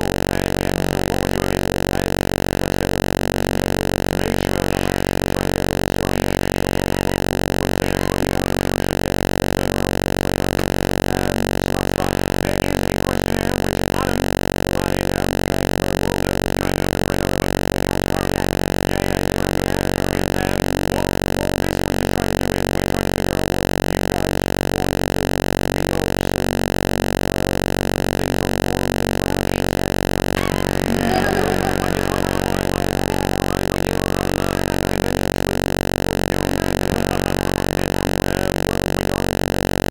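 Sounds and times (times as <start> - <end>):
electrical buzz: 29.8 - 37.6.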